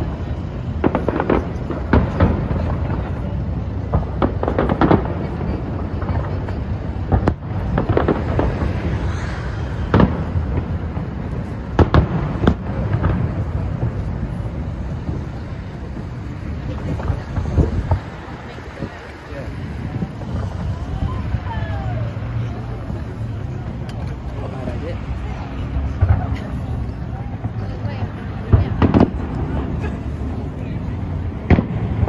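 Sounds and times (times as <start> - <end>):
fireworks bangs and crackles: 0.0 - 32.0.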